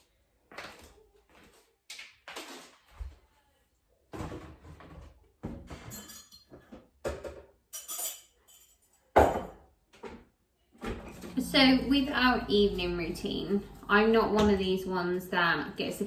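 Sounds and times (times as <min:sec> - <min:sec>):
glasses and crockery clinking: 0:05.7 - 0:09.6.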